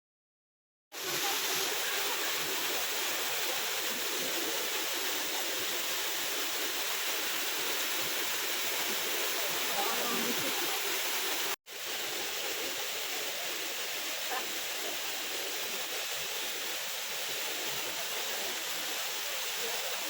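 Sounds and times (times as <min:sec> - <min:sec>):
waterfall rushing: 0:01.0 - 0:20.0.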